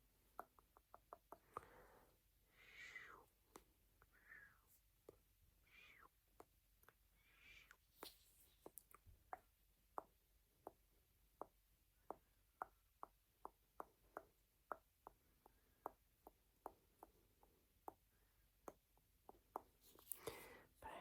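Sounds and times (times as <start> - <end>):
soft hiss: 1.6 - 9.1.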